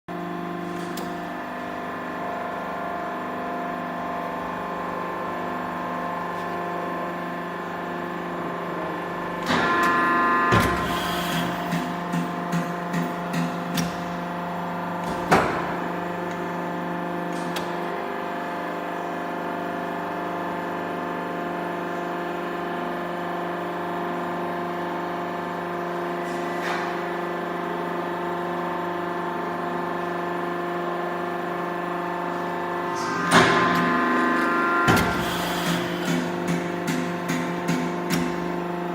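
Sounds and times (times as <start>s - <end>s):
press machine humming: 8.8s - 16.6s, 31.3s - 38.9s.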